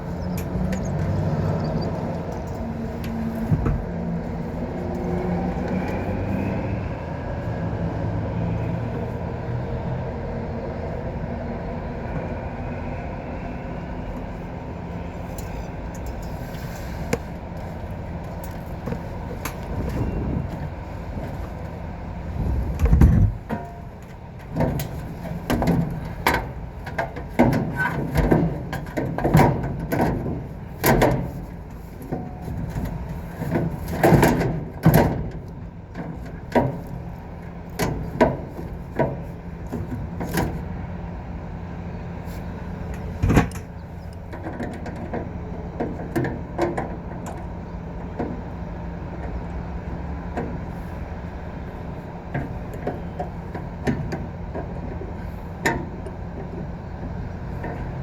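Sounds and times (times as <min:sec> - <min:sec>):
knocks and clatter of hand work: 0:32.1 - 0:35.4.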